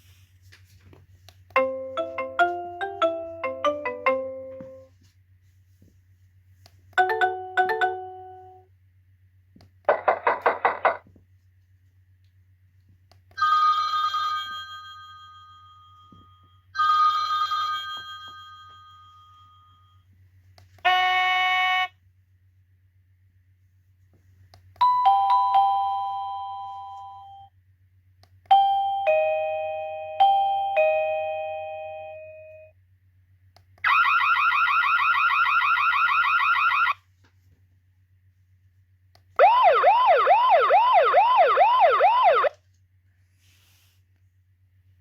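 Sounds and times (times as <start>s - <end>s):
low steady hum: 0.0s - 45.0s
doorbell ding-dong chime: 24.8s - 27.5s, 28.5s - 32.7s
siren-like rising tone: 39.4s - 42.5s.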